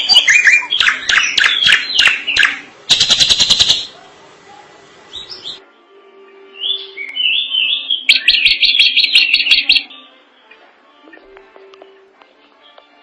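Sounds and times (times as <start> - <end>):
bird singing: 0.0 - 4.0, 5.1 - 5.6, 6.3 - 10.5.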